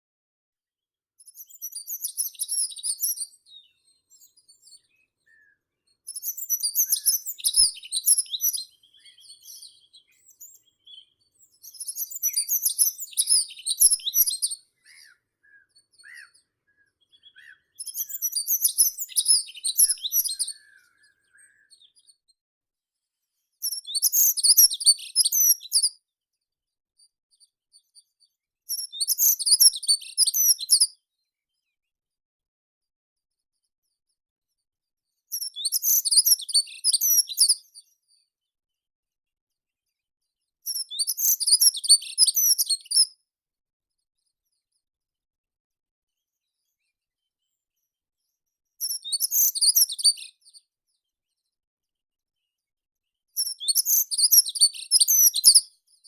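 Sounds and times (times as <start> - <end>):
songbird twittering: 5.3 - 21.8.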